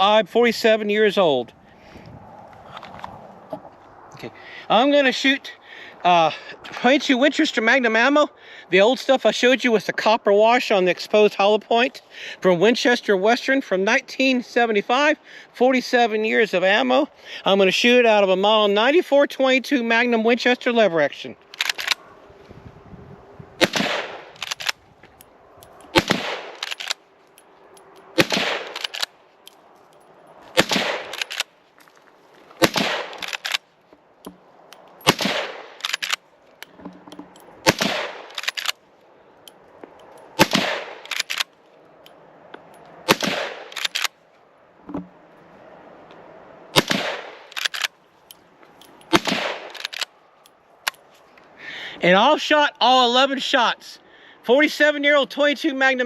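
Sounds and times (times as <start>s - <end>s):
rifle lever clacking: 21.4s - 22.0s, 23.6s - 30.0s, 30.6s - 31.5s, 32.6s - 33.6s, 34.2s - 38.8s, 39.5s - 44.2s, 47.5s - 51.0s
rifle shots: 23.6s - 24.8s, 25.9s - 27.0s, 28.2s - 29.2s, 30.5s - 31.6s, 32.6s - 33.6s, 35.0s - 36.2s, 37.6s - 38.8s, 40.4s - 41.5s, 43.1s - 44.2s, 46.7s - 47.9s, 49.1s - 50.1s.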